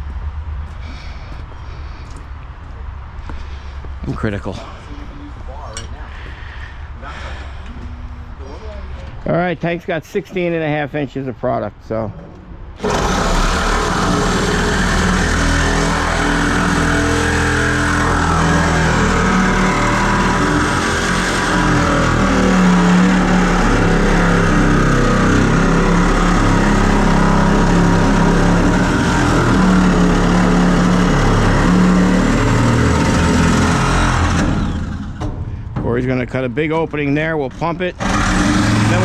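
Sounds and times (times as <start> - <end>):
engine running loudly: 12.8 - 35.7, 37.5 - 39.0.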